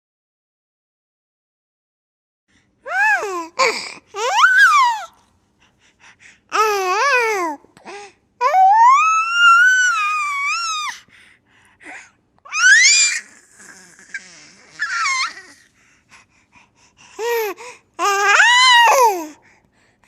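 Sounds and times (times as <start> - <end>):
baby squealing with laughter: 4.2 - 5.1, 8.5 - 11.0, 12.5 - 15.6
baby breathy gasps: 15.4 - 18.0.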